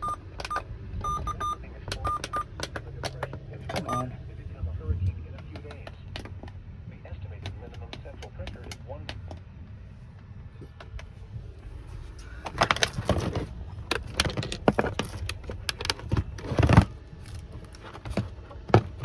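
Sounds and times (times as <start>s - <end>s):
equipment clicking and knocking: 0.0s - 4.0s, 5.4s - 6.6s, 7.4s - 9.4s, 12.4s - 19.0s
steady low rumble: 0.0s - 19.0s.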